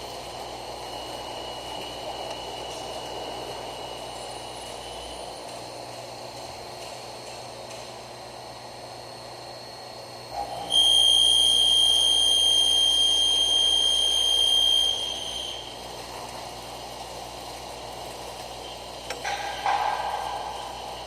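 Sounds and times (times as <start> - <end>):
steady machine noise: 0.0 - 21.0
high-pitched machine tone: 10.3 - 16.0.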